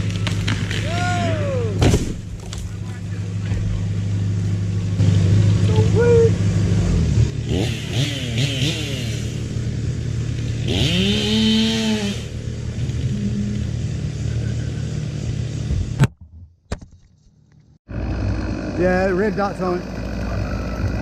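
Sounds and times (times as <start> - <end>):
chainsaw revving: 6.7 - 13.0, 17.9 - 21.0.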